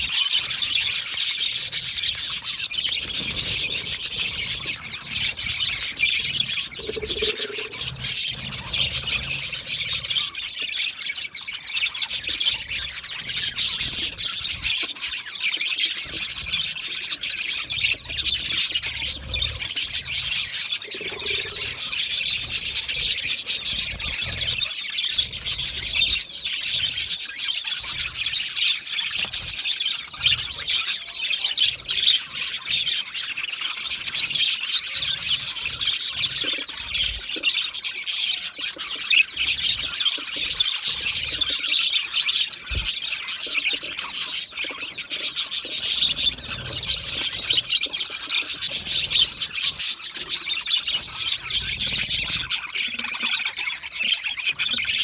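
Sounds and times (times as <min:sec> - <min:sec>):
budgerigars chirping and chattering: 0:00.0 - 0:55.0.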